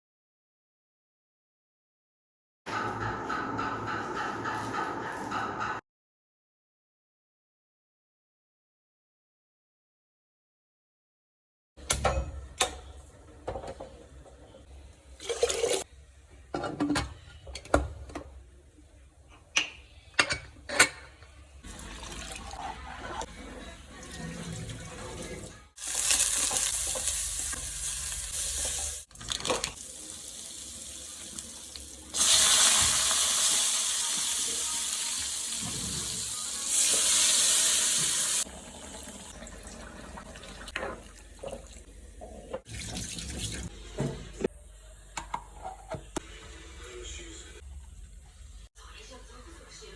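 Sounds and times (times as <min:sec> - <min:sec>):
sharp knocks and clatters: 0:02.7 - 0:05.8.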